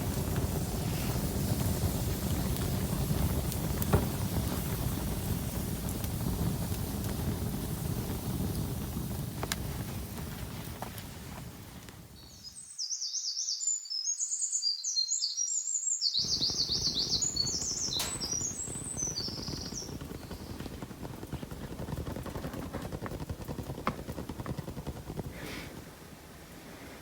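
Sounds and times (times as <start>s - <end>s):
small birds chirping: 12.1s - 22.1s.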